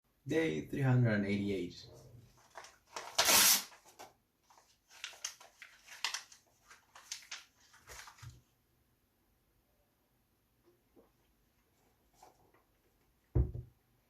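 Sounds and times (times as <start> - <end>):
paper rustling sharply: 2.3 - 8.5.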